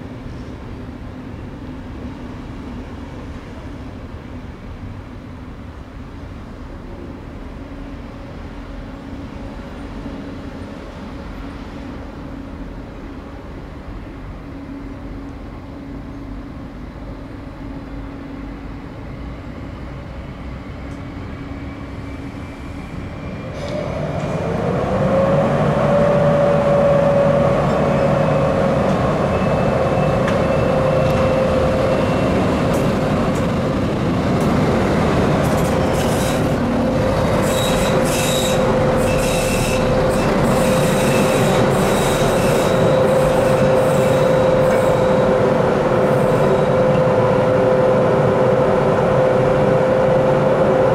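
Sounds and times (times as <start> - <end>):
train running with low hum: 0.0 - 50.9
train wheel squeal: 20.6 - 33.6, 35.5 - 50.9.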